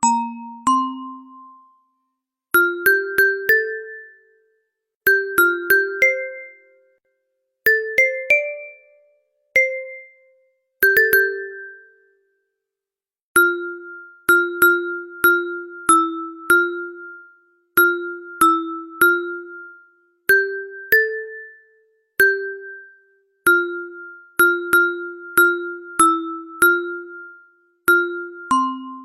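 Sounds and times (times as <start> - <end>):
mallet ringtone melody: 0.0 - 1.9, 2.5 - 4.3, 5.1 - 6.9, 7.7 - 9.0, 9.6 - 12.0, 13.4 - 29.0.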